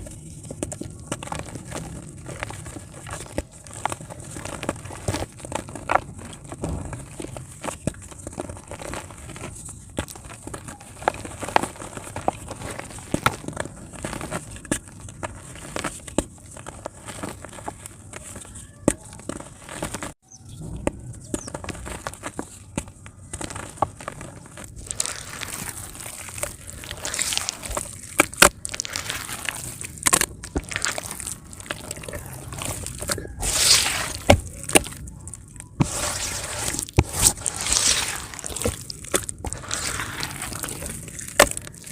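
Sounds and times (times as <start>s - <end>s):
clay crackling in water: 21.6s - 41.9s.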